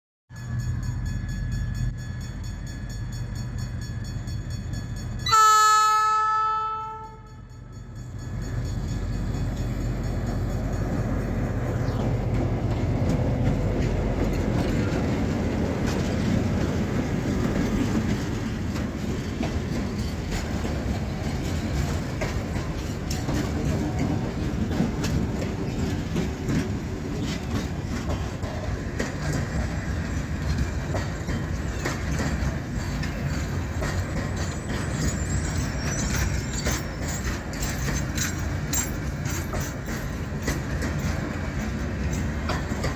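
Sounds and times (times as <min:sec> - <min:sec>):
diesel locomotives running: 0:00.3 - 0:42.9
wheels rumbling on rail: 0:00.3 - 0:42.9
locomotive air horn: 0:05.2 - 0:07.5.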